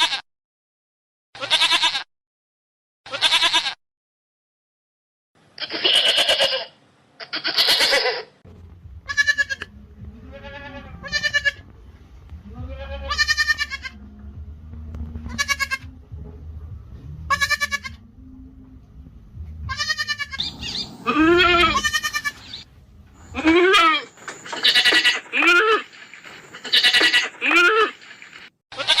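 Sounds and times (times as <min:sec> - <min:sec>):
goats bleating: 0:01.4 - 0:02.1, 0:03.1 - 0:03.8, 0:05.6 - 0:08.3, 0:09.1 - 0:11.6, 0:12.4 - 0:14.0, 0:15.3 - 0:15.9, 0:17.3 - 0:18.0, 0:19.7 - 0:25.9, 0:26.6 - 0:28.0, 0:28.8 - 0:29.0
low steady rumble: 0:08.5 - 0:23.4.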